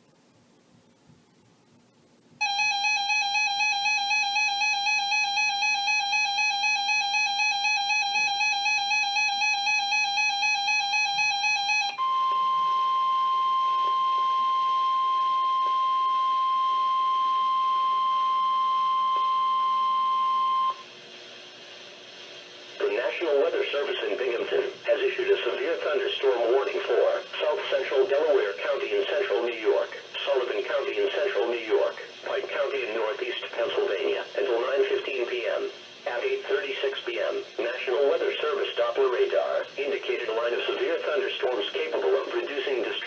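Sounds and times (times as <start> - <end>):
steady alarm tone: 2.4 - 20.9.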